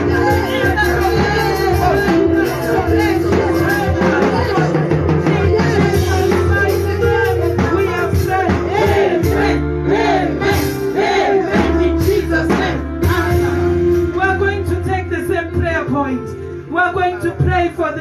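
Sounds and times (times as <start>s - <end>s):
voices singing: 0.0s - 13.5s
sustained keyboard chords: 0.0s - 18.0s.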